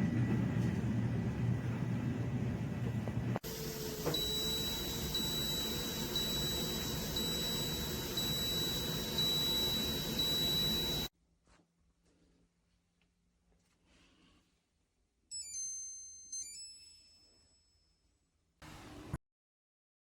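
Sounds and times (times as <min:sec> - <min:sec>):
high electronic beeps: 0:04.1 - 0:11.1.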